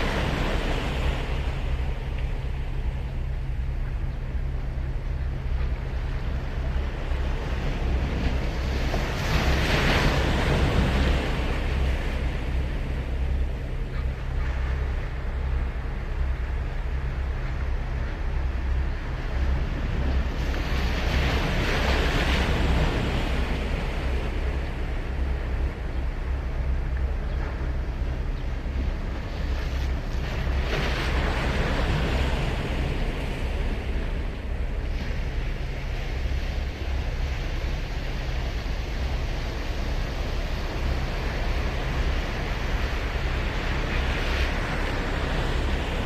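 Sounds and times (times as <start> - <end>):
surf washing up a sandy beach: 0.0 - 1.9, 29.4 - 46.0
wind rumble on microphone: 0.0 - 46.0.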